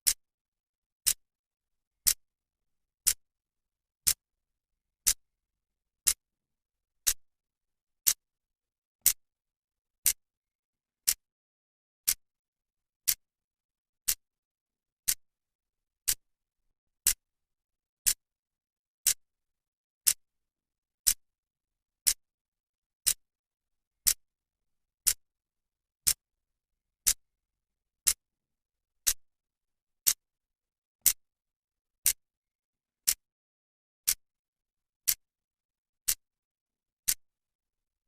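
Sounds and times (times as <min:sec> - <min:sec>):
clock ticking: 0:11.0 - 0:11.2.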